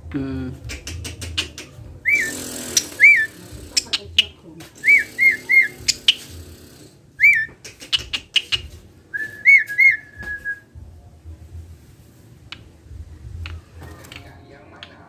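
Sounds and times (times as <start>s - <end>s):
bird harsh clicking notes: 0.6s - 8.8s
bird whistled calls: 2.0s - 3.9s, 4.8s - 6.2s, 7.2s - 10.6s.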